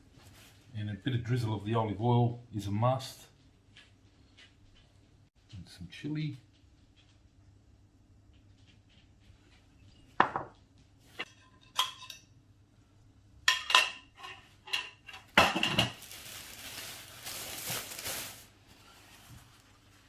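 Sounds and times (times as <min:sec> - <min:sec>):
plates and cutlery clinking: 0:10.2 - 0:12.3, 0:13.5 - 0:16.0
rustling: 0:15.9 - 0:20.0.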